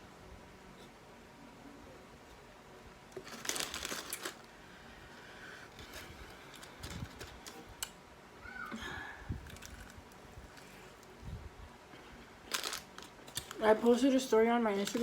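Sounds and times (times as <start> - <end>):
crackly eating clicks: 12.5 - 14.0.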